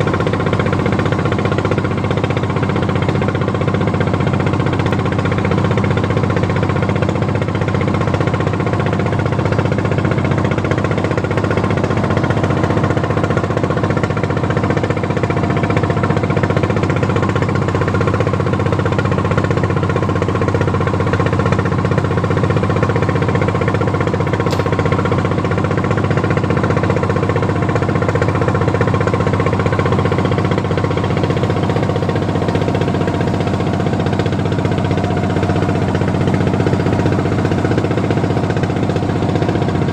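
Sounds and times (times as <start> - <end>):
boat engine running: 0.0 - 39.9.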